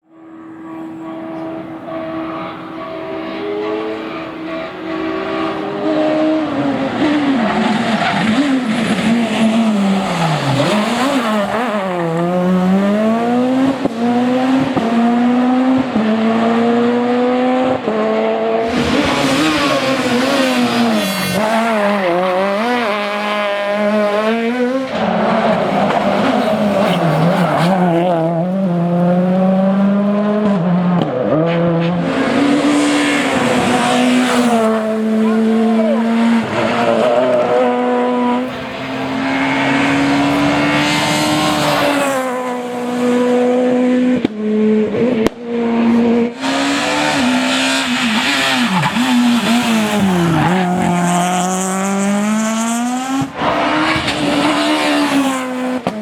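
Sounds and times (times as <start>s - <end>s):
rally car engines revving: 0.0s - 56.0s
loud rushing noise: 18.6s - 24.0s.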